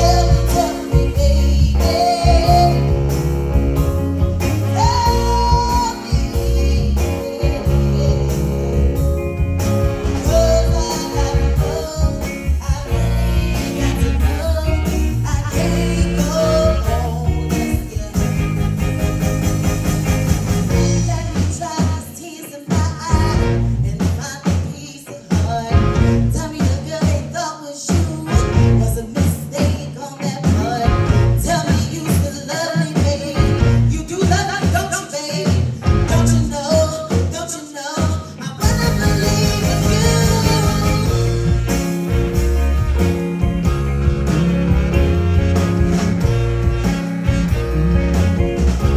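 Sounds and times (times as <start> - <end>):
person singing: 0.0 - 3.4, 4.6 - 9.2, 10.0 - 18.6, 20.7 - 41.6
live rock band playing: 0.0 - 48.9.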